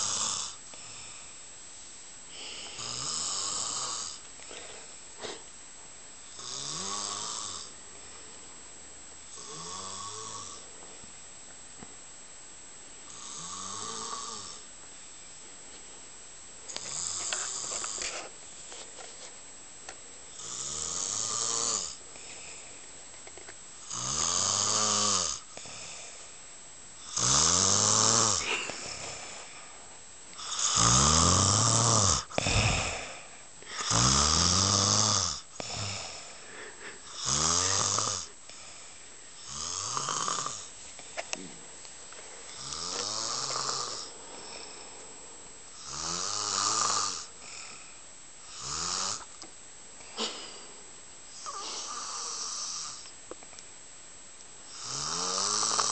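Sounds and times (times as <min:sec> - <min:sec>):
man snoring loudly: 0:00.0 - 0:01.1, 0:02.7 - 0:04.2, 0:06.3 - 0:07.8, 0:09.3 - 0:10.7, 0:13.1 - 0:14.6, 0:16.8 - 0:17.9, 0:20.3 - 0:22.0, 0:23.8 - 0:26.0, 0:27.0 - 0:29.3, 0:30.4 - 0:36.4, 0:37.0 - 0:38.6, 0:39.4 - 0:40.7, 0:42.5 - 0:44.6, 0:45.8 - 0:47.8, 0:48.4 - 0:49.3, 0:51.4 - 0:53.0, 0:54.7 - 0:55.9.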